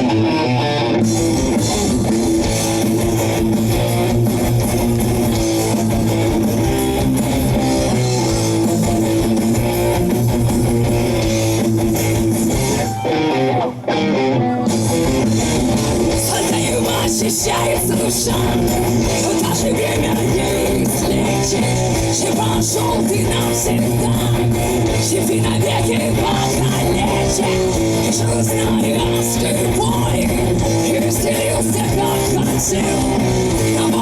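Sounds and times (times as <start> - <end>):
electric guitar: 0.0 - 34.0
rock band playing live: 0.0 - 34.0.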